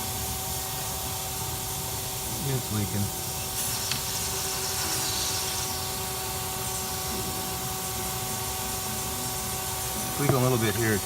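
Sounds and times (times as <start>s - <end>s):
air hiss: 0.0s - 11.0s
vacuum cleaner motor whine: 2.4s - 11.0s.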